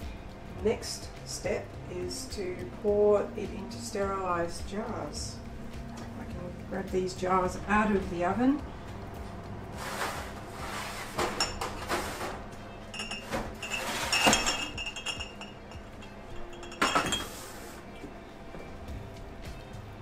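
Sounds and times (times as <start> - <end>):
background music: 0.0 - 20.0
glass jars clinking: 11.3 - 12.0, 12.9 - 17.4.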